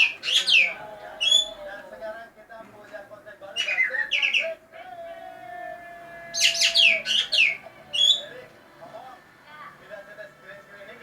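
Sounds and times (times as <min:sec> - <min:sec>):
shrill bird calls: 0:00.0 - 0:01.6, 0:03.6 - 0:04.5, 0:06.3 - 0:08.3.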